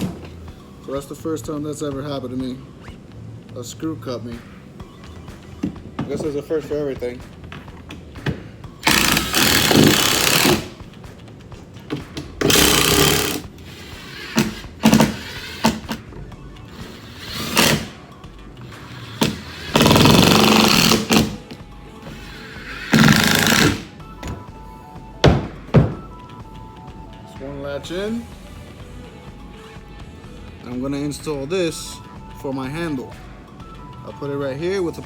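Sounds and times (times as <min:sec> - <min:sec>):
power driver driving screws: 0:08.3 - 0:10.8, 0:12.2 - 0:16.0, 0:16.7 - 0:18.0, 0:18.8 - 0:24.5.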